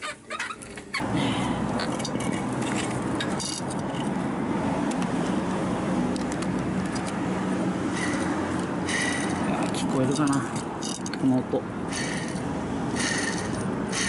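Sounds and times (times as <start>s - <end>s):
bearing rattling and grinding: 1.7s - 4.2s, 6.1s - 7.2s, 7.9s - 14.0s.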